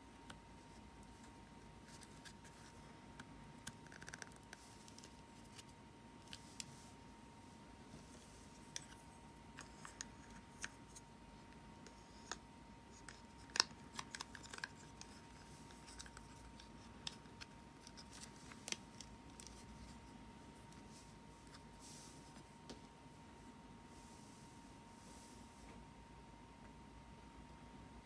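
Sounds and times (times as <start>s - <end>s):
hands handling packaging: 13.0s - 20.0s.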